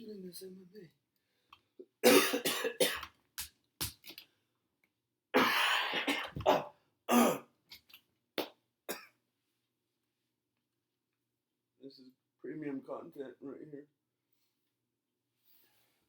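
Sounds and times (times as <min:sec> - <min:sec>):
man coughing: 0:02.0 - 0:03.0, 0:05.4 - 0:07.4.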